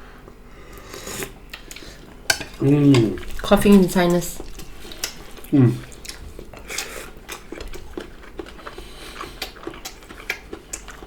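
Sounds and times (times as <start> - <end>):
soft mouth sounds: 4.5 - 7.9.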